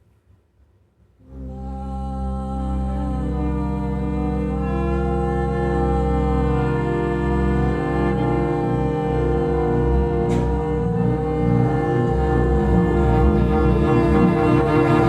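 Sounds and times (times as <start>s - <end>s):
low drone: 1.3s - 15.0s
sustained bowed-string tones: 1.3s - 15.0s
short sharp click: 10.3s - 10.6s.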